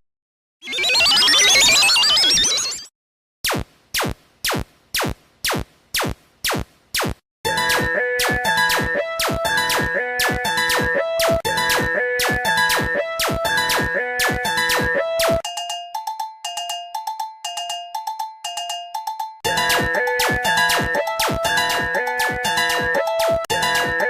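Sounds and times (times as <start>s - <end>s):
clicking electronic beat: 4.5s - 15.4s, 18.1s - 23.9s
synthesizer melody: 7.5s - 24.0s.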